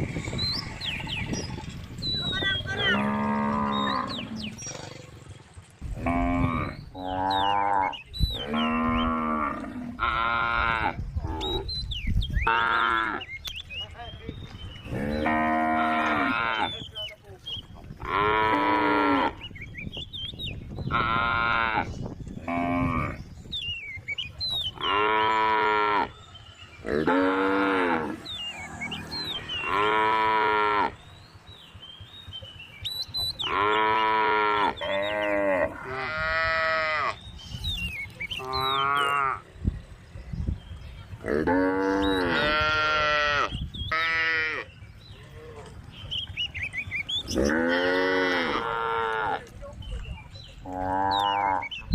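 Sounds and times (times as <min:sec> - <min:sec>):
cows mooing: 0:00.0 - 0:11.7, 0:12.4 - 0:13.3, 0:14.8 - 0:16.8, 0:18.0 - 0:19.5, 0:20.9 - 0:23.2, 0:24.7 - 0:31.1, 0:33.3 - 0:37.2, 0:38.4 - 0:39.5, 0:41.2 - 0:45.9, 0:47.2 - 0:49.5, 0:50.6 - 0:51.9.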